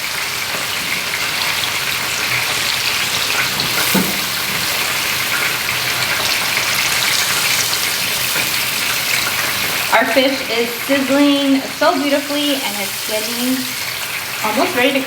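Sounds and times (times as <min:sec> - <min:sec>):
fish fillet sizzling in frying pan: 0:00.0 - 0:15.0.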